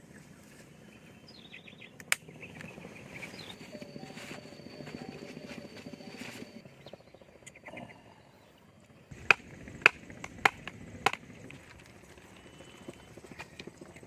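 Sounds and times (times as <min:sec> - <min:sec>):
blade chopping wood: 0:09.2 - 0:11.2.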